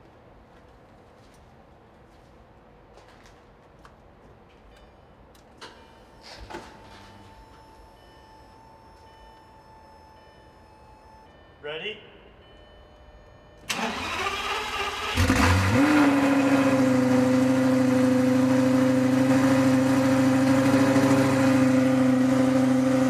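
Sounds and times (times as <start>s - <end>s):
engine starter cranking: 13.6s - 16.1s
engine revving and idling loudly: 15.0s - 23.0s.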